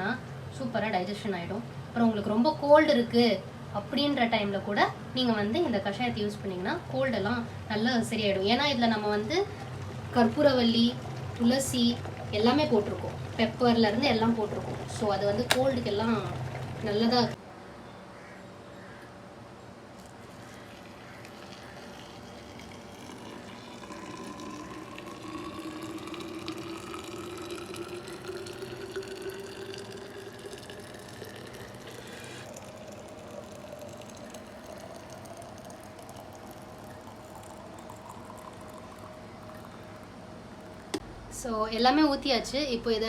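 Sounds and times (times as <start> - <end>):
water pouring into flask: 9.0 - 17.4, 20.0 - 40.9.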